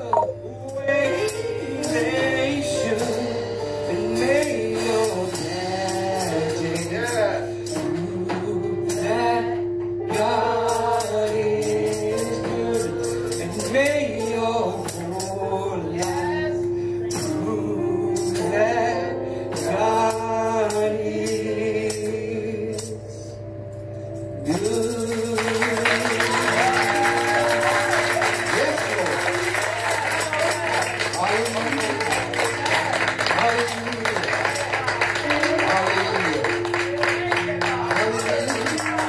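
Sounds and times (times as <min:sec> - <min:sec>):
gospel singing: 0:00.0 - 0:23.2, 0:24.4 - 0:39.0
held chords: 0:00.0 - 0:39.0
tambourine beat: 0:24.5 - 0:39.0.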